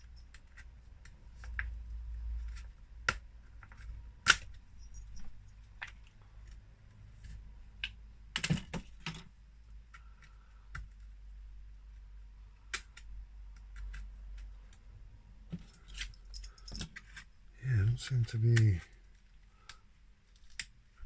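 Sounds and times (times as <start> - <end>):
low steady hum: 14.1 - 19.7.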